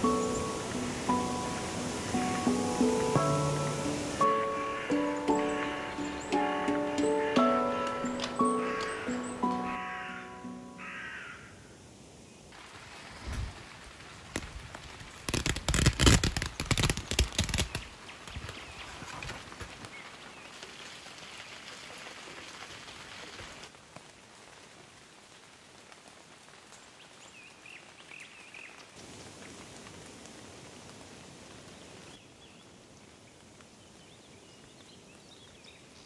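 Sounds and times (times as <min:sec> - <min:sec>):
rain pattering: 0:00.0 - 0:09.8, 0:12.5 - 0:36.0
loud crackling knocks: 0:14.3 - 0:19.9.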